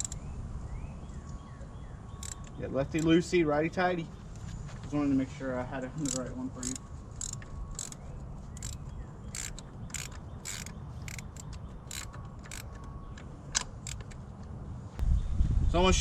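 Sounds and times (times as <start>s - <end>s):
hand ratchet clicking: 0.0s - 0.2s, 2.2s - 3.2s, 6.0s - 14.2s.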